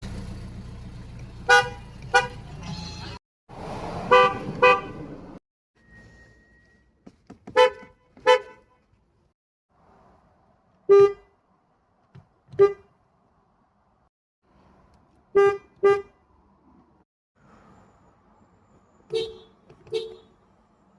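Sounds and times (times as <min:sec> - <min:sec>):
car horn short toots: 0:01.5 - 0:02.5, 0:04.1 - 0:05.0, 0:07.5 - 0:08.8, 0:10.9 - 0:11.3, 0:12.5 - 0:12.9, 0:15.3 - 0:16.1, 0:19.1 - 0:20.4.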